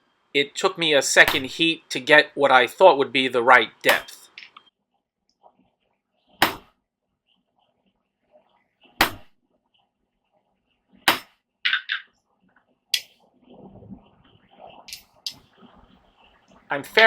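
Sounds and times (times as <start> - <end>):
hammer striking punch into steel: 6.4 - 6.6, 9.0 - 9.3.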